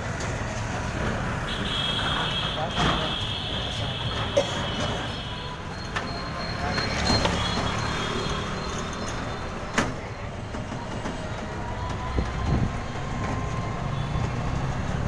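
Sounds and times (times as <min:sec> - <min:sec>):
moving vehicle rumble and rattle: 0:00.0 - 0:15.0.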